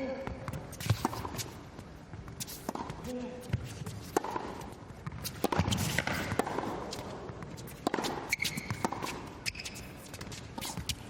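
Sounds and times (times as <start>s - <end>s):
tennis ball bouncing: 0.1s - 11.0s
tennis racquet striking ball: 2.5s - 11.0s
shoe squeaks: 5.1s - 6.3s, 7.6s - 11.0s.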